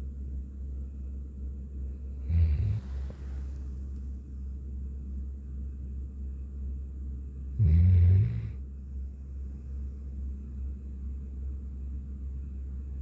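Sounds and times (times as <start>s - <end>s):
steady low hum: 0.0s - 13.0s
dog snoring: 2.2s - 3.6s, 7.5s - 8.6s.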